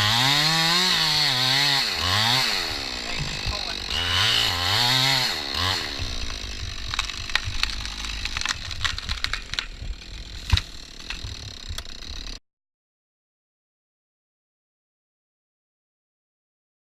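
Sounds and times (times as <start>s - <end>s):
chainsaw revving: 0.0s - 12.4s
sharp knocks and clicks: 6.0s - 11.9s.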